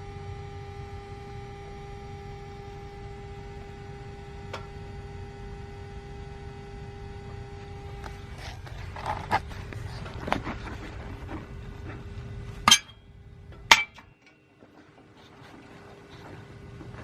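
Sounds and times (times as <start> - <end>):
electrical hum and low rumble: 0.0 - 17.0
sharp metallic clanks: 12.6 - 13.0, 13.7 - 14.4
metal tools clinking: 12.7 - 13.0.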